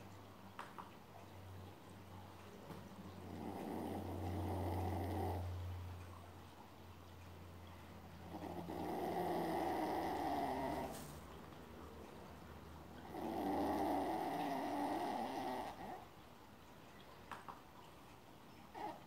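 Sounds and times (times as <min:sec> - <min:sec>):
dog snoring: 0:03.2 - 0:05.5, 0:08.2 - 0:11.1, 0:13.0 - 0:16.0, 0:18.7 - 0:19.0.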